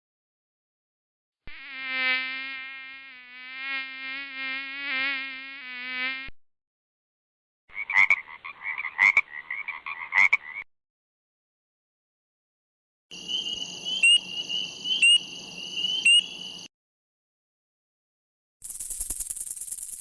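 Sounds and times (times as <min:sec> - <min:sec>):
insect buzzing: 0:01.5 - 0:06.4, 0:18.6 - 0:20.0.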